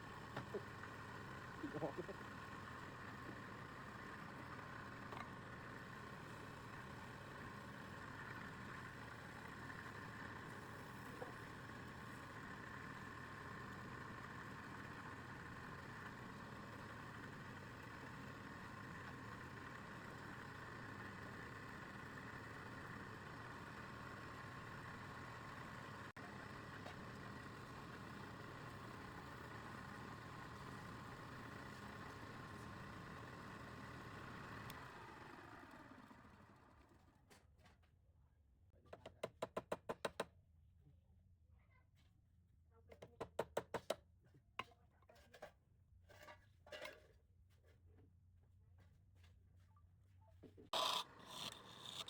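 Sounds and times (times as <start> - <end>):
wood lathe motor humming and whining: 0.0 - 36.6, 50.8 - 52.0.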